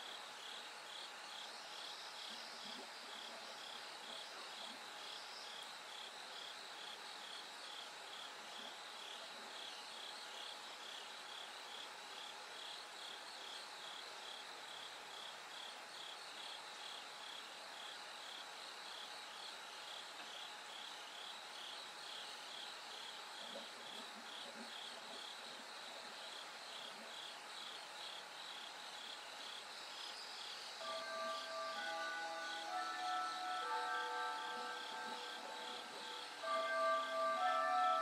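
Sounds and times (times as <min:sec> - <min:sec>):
crickets chirping: 0:00.0 - 0:38.0
insect song: 0:00.0 - 0:38.0
soft music: 0:30.8 - 0:38.0.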